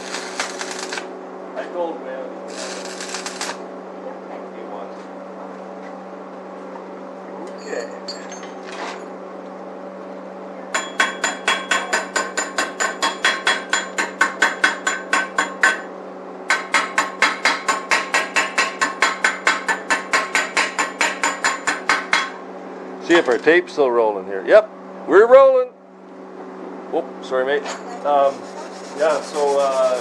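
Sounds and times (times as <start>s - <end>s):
hammer striking steel: 10.8s - 15.9s, 16.5s - 22.4s.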